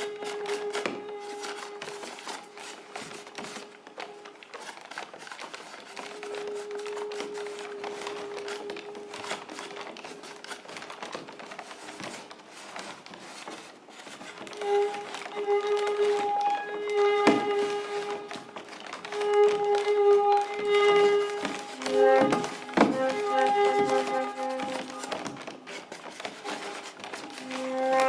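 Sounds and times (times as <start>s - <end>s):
long held note: 0.0s - 4.4s, 6.0s - 10.3s, 14.5s - 25.5s, 26.4s - 28.0s.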